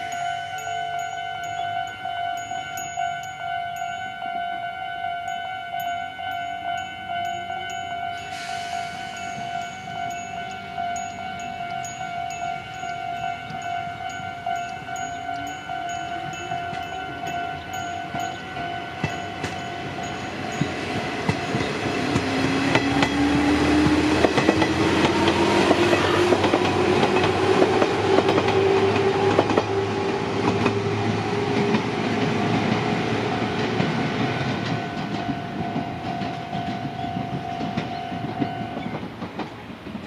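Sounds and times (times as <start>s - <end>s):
crossing warning bell ringing: 0.0s - 39.5s
wheels clicking over rail joints: 9.3s - 40.0s.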